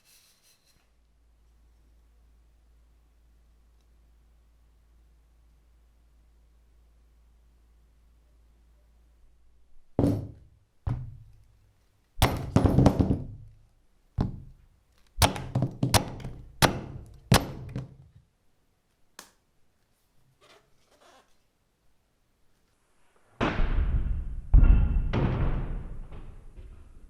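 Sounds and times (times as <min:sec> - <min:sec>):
cleaver chopping on wood: 0:12.2 - 0:13.0, 0:15.2 - 0:17.9.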